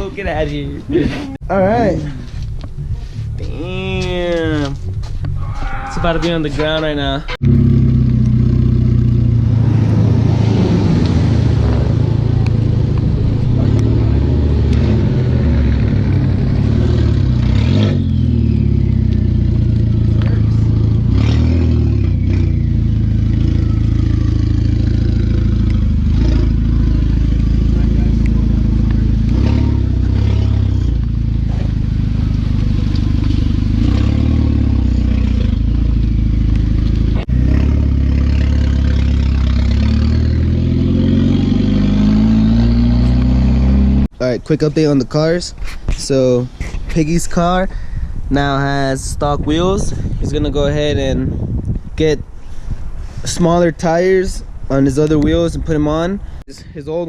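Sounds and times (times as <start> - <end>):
car engine revving: 7.3 - 44.1.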